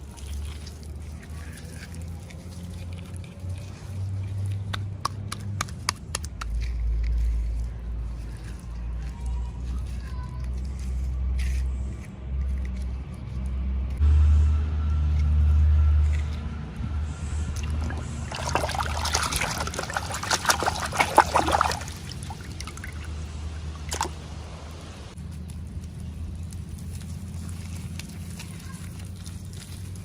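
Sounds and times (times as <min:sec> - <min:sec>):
low rumble: 0:10.6 - 0:30.0.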